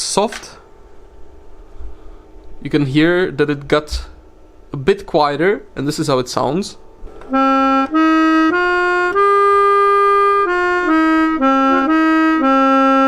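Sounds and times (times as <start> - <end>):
reed organ melody: 7.0 - 13.0.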